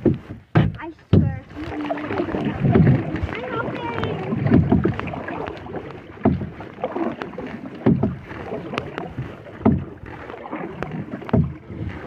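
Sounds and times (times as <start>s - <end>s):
paddle strokes in water: 0.0s - 12.0s.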